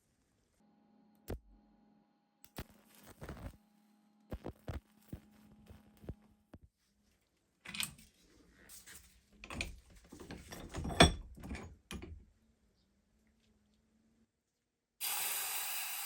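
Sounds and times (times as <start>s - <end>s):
knocks and metallic clinks: 9.4s - 12.2s.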